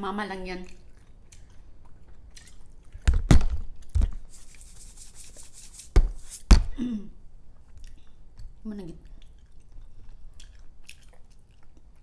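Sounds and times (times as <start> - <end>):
hissy rubbing sound: 4.3 - 6.5.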